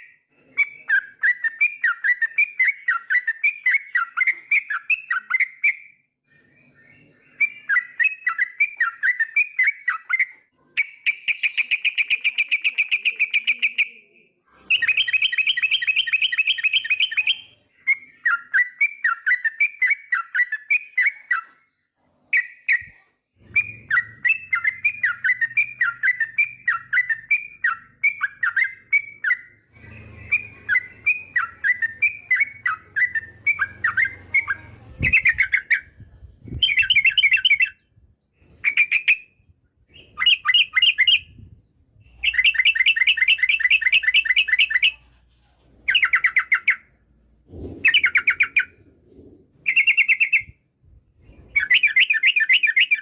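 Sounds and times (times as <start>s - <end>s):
bird chattering: 7.4s - 21.5s, 22.4s - 37.9s, 42.1s - 50.6s.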